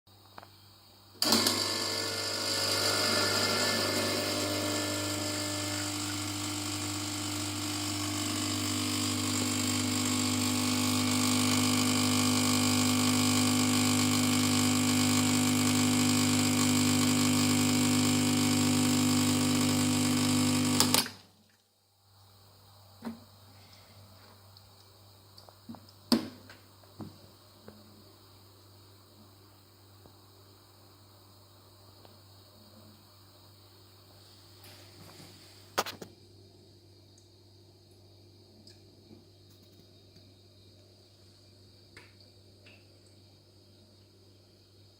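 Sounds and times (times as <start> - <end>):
espresso machine pump buzzing: 1.2 - 21.2.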